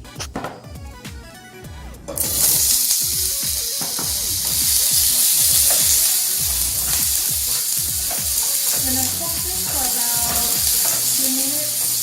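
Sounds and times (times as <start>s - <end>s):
potatoes sizzling in hot oil: 2.2s - 12.0s.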